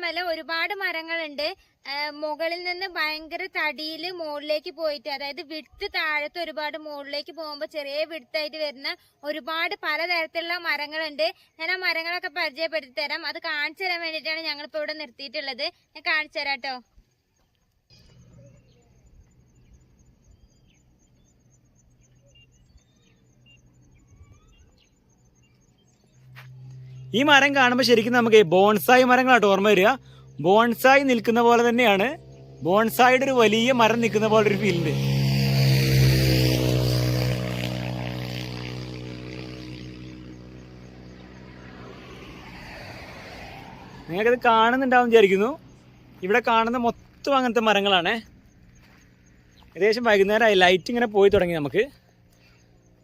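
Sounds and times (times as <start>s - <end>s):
faint bird chirps: 16.8s - 27.2s
insect chirping: 16.8s - 28.2s, 28.9s - 33.9s, 39.0s - 51.3s
vehicle engine droning: 17.9s - 53.0s.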